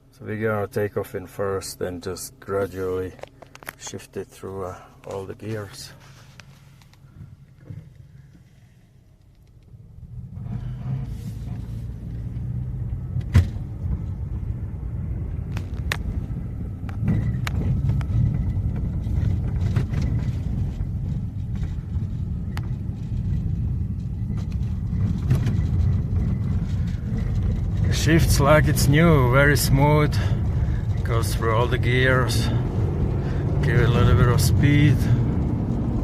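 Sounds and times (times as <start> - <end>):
car engine accelerating: 9.6 - 36.0.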